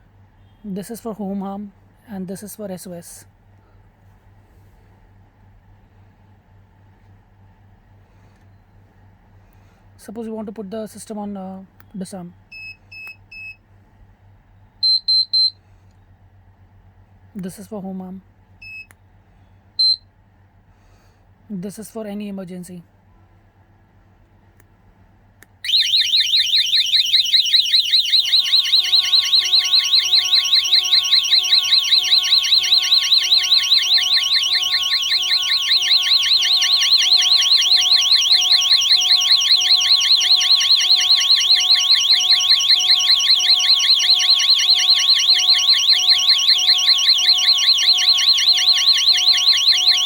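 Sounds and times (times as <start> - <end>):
fast-warbling alarm siren: 25.6 - 50.0.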